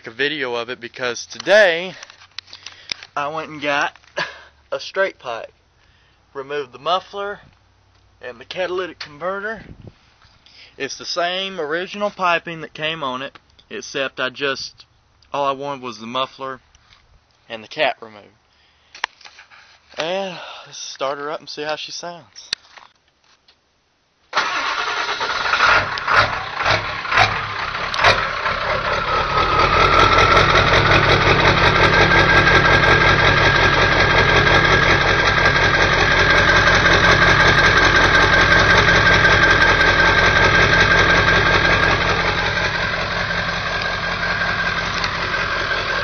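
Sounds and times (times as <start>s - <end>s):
diesel engine starting and idling: 24.3s - 46.0s.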